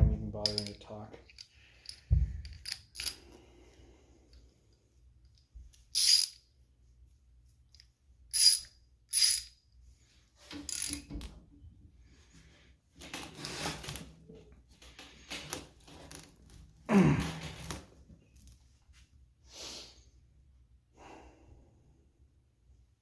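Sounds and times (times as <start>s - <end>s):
socket ratchet clicking: 0.4s - 3.2s, 5.8s - 6.4s, 8.3s - 9.6s.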